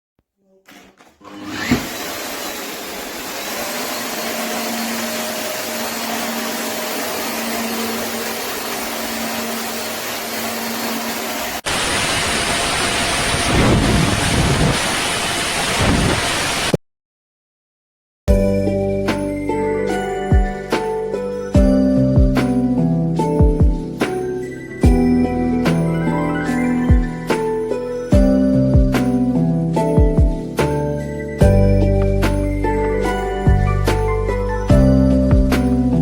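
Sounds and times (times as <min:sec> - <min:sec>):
vacuum cleaner running: 0:01.2 - 0:16.8.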